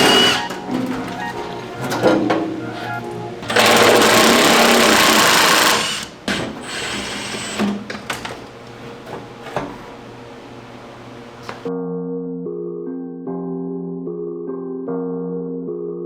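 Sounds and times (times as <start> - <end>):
power tool running: 0.0 - 8.4.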